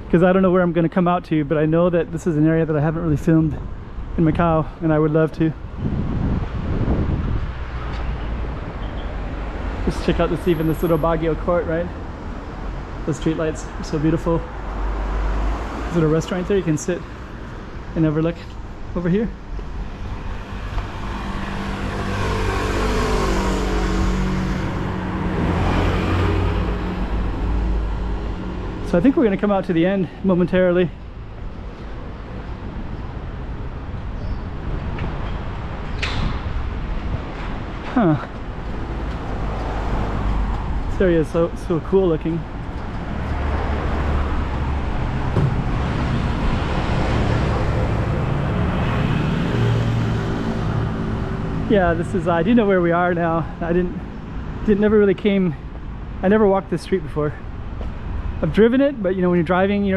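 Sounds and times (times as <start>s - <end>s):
road noise: 0.0s - 59.9s
car passing by: 20.2s - 28.9s, 38.8s - 41.4s, 42.6s - 51.7s.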